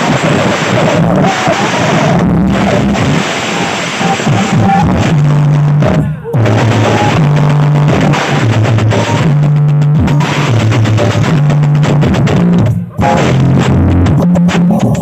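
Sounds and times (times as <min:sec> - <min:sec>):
dance music with heavy bass: 0:00.0 - 0:15.0.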